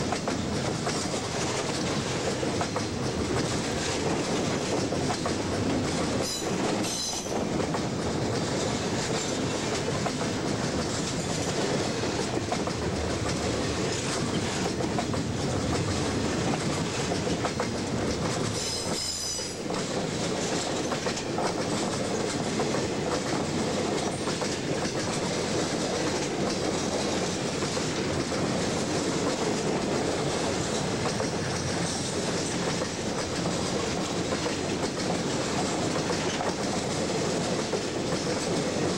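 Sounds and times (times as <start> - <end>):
train wheels clattering: 0.0 - 38.9
wheel squeals: 18.6 - 19.6.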